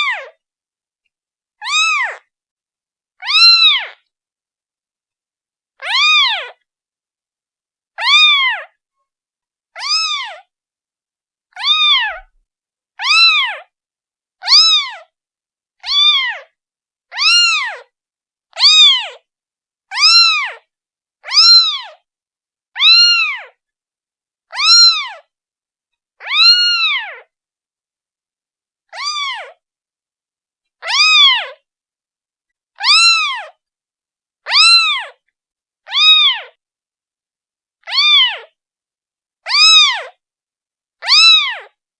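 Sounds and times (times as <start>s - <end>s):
kitten meowing: 0.0s - 0.4s, 1.6s - 2.3s, 3.2s - 4.0s, 5.8s - 6.6s, 8.0s - 8.7s, 9.8s - 10.5s, 11.5s - 12.4s, 13.0s - 13.7s, 14.4s - 15.1s, 15.8s - 16.5s, 17.1s - 17.9s, 18.5s - 19.2s, 19.9s - 20.6s, 21.2s - 22.0s, 22.8s - 23.6s, 24.5s - 25.3s, 26.2s - 27.3s, 28.9s - 29.6s, 30.8s - 31.6s, 32.8s - 33.6s, 34.4s - 35.2s, 35.8s - 36.6s, 37.8s - 38.5s, 39.5s - 40.2s, 41.0s - 41.8s.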